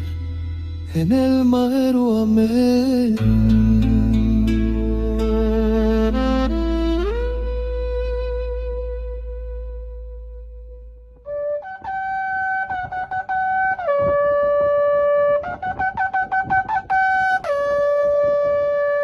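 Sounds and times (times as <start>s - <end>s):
shofar blasts: 11.3s - 19.0s.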